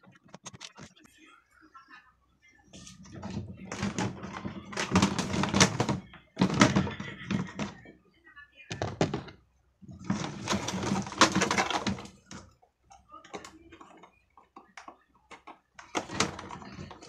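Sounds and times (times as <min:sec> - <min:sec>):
handling noise clattering: 0:02.8 - 0:08.0, 0:08.7 - 0:12.6, 0:13.2 - 0:17.0.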